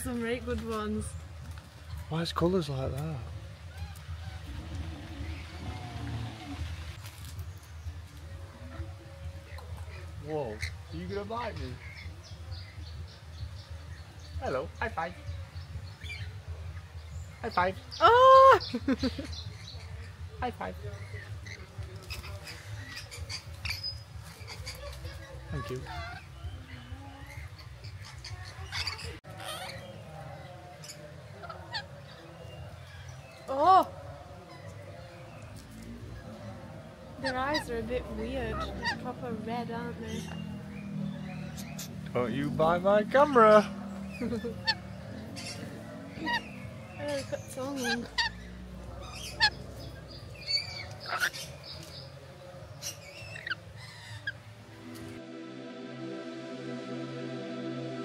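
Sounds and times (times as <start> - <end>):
parrots squawking and chirping: 3.7 - 7.3, 9.5 - 12.1, 19.6 - 32.6, 37.1 - 54.5
bird squawks: 38.4 - 39.3, 40.1 - 42.2, 43.2 - 51.6
soft background music: 44.8 - 58.0.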